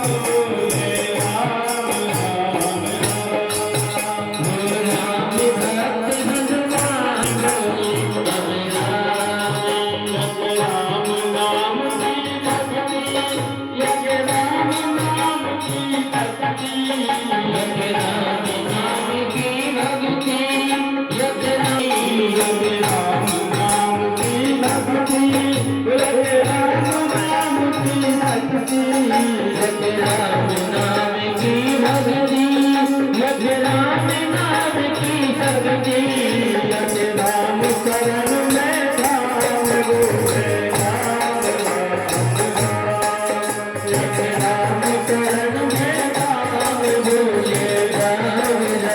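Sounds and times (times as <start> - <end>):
jingling hand percussion: 0.0 - 48.9.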